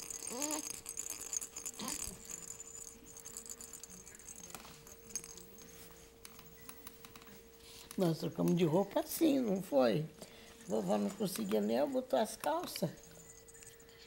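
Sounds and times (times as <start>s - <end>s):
faint steady hum: 0.0s - 14.0s
baby cooing: 0.1s - 0.8s.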